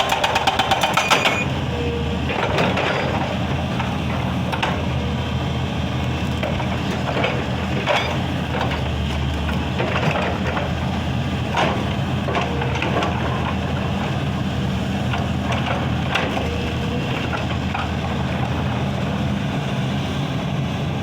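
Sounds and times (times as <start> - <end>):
excavator diesel engine running: 0.0 - 21.0.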